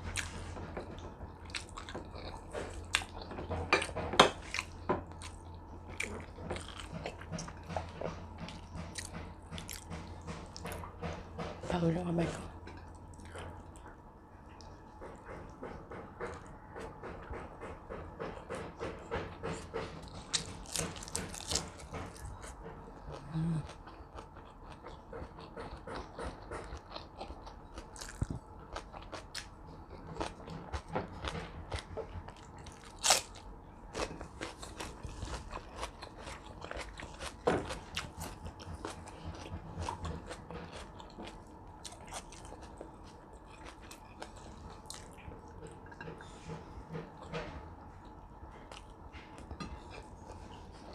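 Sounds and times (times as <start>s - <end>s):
chewing and biting food: 0.0s - 11.2s, 12.3s - 15.5s, 19.3s - 50.9s.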